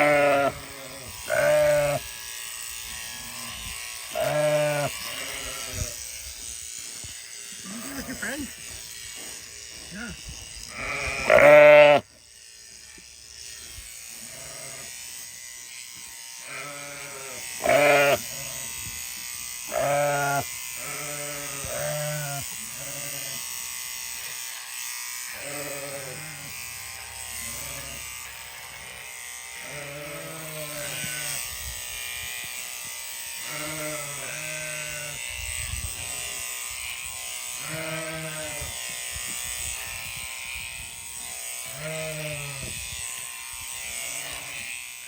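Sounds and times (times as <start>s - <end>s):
sheep bleating: 0.0s - 2.0s, 3.2s - 6.0s, 7.6s - 8.6s, 9.9s - 12.1s, 14.2s - 15.0s, 16.4s - 18.7s, 19.7s - 23.6s, 25.3s - 28.2s, 29.6s - 31.4s, 33.4s - 35.3s, 37.6s - 38.8s, 41.7s - 42.7s, 43.9s - 44.7s
electric shears buzzing: 0.0s - 45.0s.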